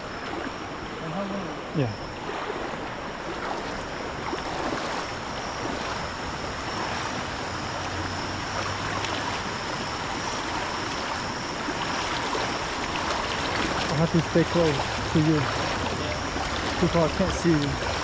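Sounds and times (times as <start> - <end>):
rush of moving water: 0.0 - 18.0.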